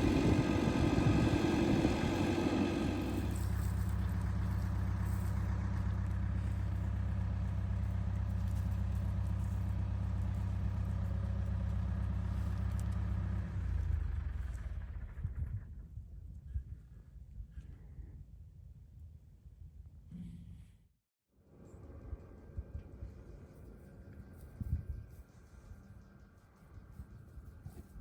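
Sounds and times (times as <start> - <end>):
engine idling: 0.0 - 15.9.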